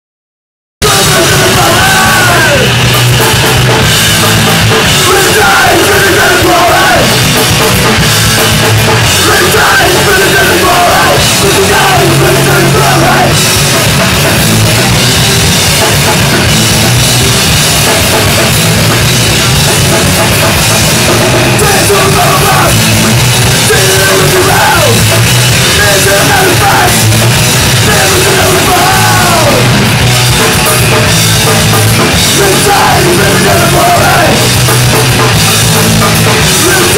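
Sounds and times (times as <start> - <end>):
shouted vocals: 0.8 - 2.8, 4.5 - 7.2, 9.0 - 13.4, 21.5 - 22.9, 23.6 - 27.2, 27.8 - 30.0, 32.2 - 34.6, 36.4 - 36.9
distorted guitars: 0.8 - 36.9
pounding drum kit: 0.8 - 36.9
punk rock band playing live: 0.8 - 36.9.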